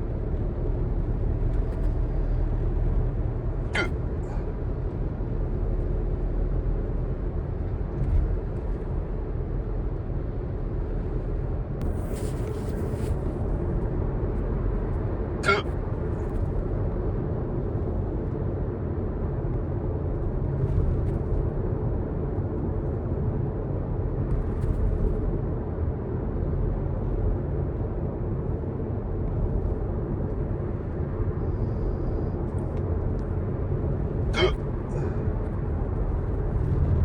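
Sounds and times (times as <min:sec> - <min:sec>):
car engine rumble: 0:00.0 - 0:37.0
faint short sounds: 0:03.8 - 0:04.4, 0:15.4 - 0:15.7, 0:34.3 - 0:35.2.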